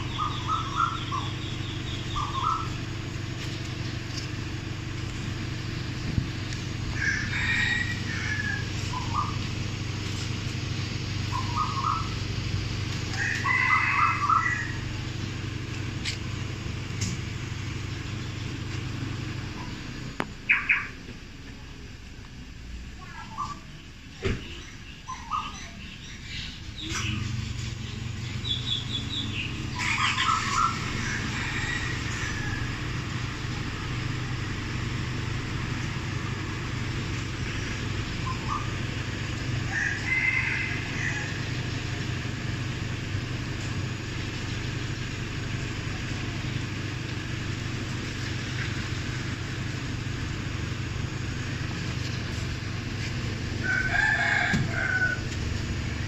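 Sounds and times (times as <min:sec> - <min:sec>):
car engine idling: 0:00.0 - 0:56.0
rooster crowing: 0:06.9 - 0:09.3, 0:13.1 - 0:14.9, 0:29.7 - 0:33.2, 0:39.6 - 0:41.5, 0:53.6 - 0:55.4.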